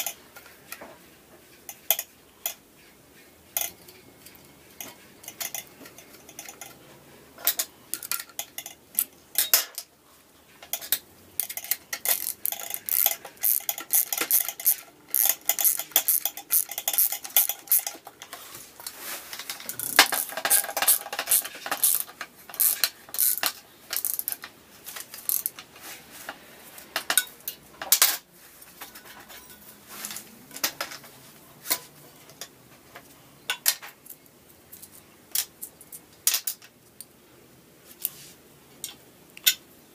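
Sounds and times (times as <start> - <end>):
metal tools clicking and clinking: 3.6 - 6.8, 7.4 - 9.9, 10.6 - 18.4, 19.3 - 25.6.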